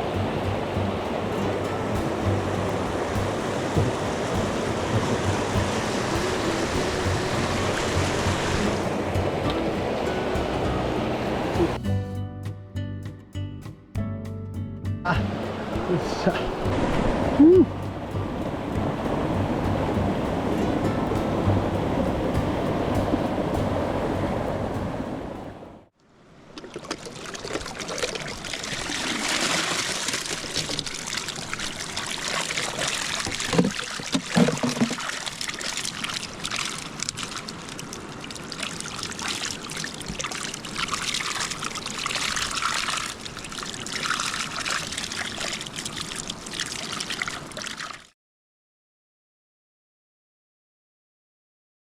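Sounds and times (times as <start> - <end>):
stream water running: 0.0 - 11.9, 15.1 - 48.2.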